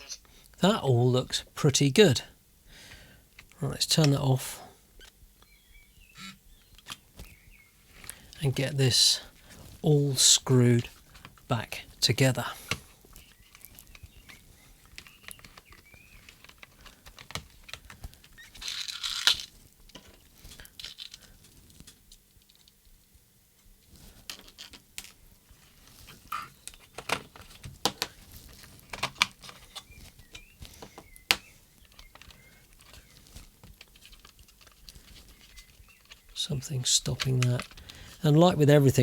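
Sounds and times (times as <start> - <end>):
plastic parts clicking and tapping: 6.2 - 7.4, 12.6 - 22.8, 24.2 - 25.2, 26.3 - 38.0.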